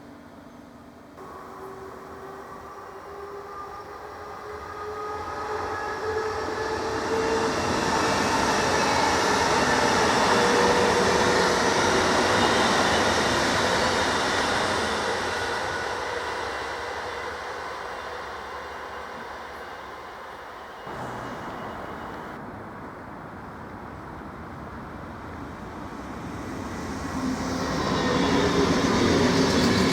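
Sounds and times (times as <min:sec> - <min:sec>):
train passing: 0:00.0 - 0:29.9
steady whining tones: 0:15.9 - 0:22.4.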